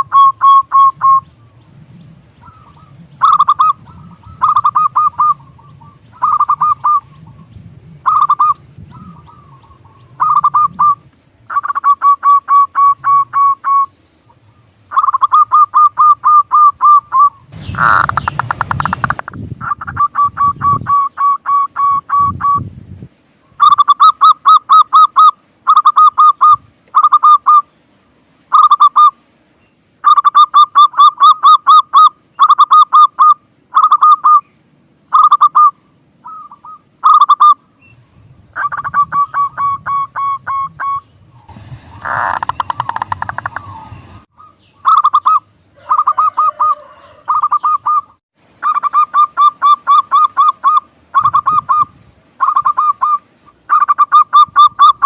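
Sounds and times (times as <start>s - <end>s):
dove cooing: 0.0s - 22.6s, 38.6s - 41.1s, 42.0s - 55.0s.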